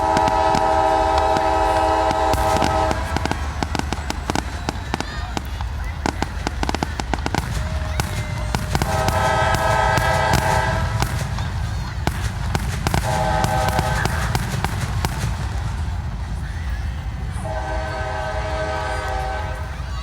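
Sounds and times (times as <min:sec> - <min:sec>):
train horn blast: 0:00.0 - 0:03.7, 0:08.6 - 0:11.1, 0:13.0 - 0:14.1, 0:17.4 - 0:19.8
fireworks popping and crackling: 0:00.0 - 0:20.0.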